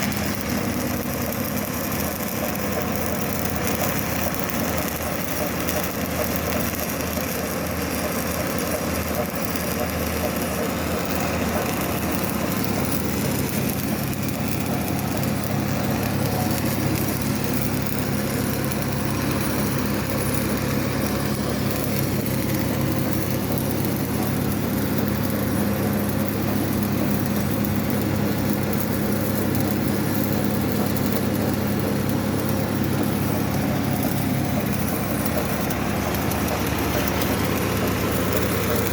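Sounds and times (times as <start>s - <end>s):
welding arc crackling and hissing: 0.0s - 38.9s.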